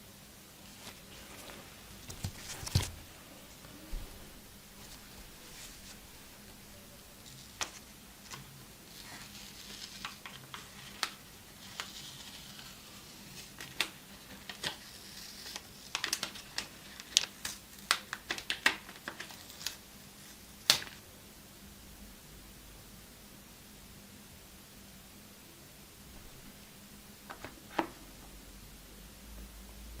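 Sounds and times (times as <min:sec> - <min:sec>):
packaging rustling: 0:00.7 - 0:03.2.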